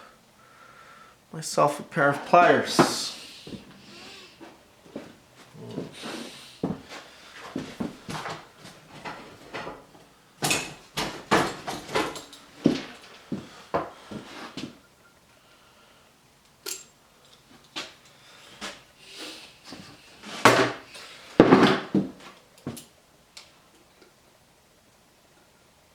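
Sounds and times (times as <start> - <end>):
hand tools clinking: 10.4 - 13.2, 16.6 - 18.2.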